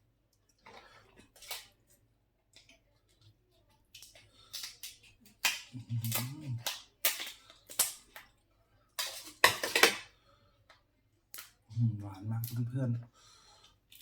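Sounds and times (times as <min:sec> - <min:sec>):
shells cracking and snapping: 0:03.9 - 0:08.4, 0:10.7 - 0:11.6.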